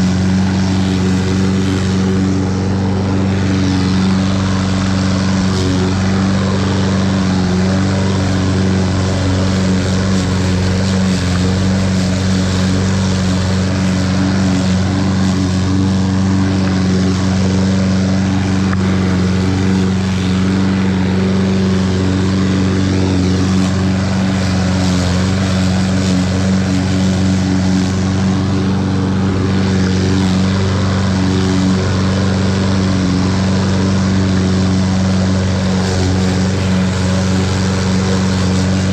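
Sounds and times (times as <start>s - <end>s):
lawn mower engine running: 0.0s - 38.9s.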